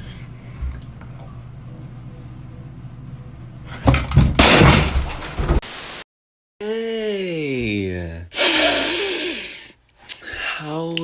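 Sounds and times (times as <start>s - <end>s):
low steady hum: 0.0s - 4.7s
crashing and banging: 3.9s - 5.6s
burst of hiss: 8.4s - 9.7s.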